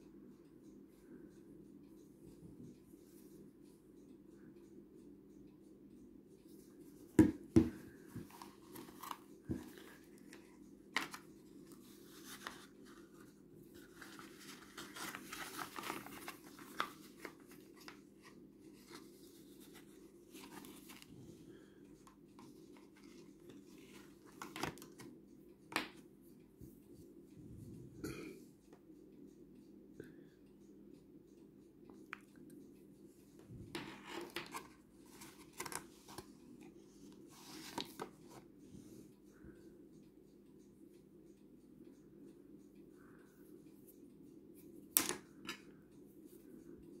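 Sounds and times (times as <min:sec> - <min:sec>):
steady low hum: 0:00.0 - 0:47.0
packaging rustling: 0:13.9 - 0:17.9.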